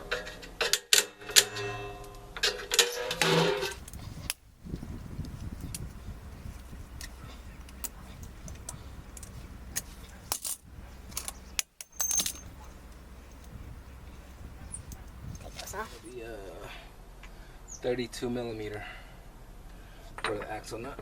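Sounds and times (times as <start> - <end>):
steady low rumble: 3.7 - 16.2
metal tools clinking: 7.0 - 16.1.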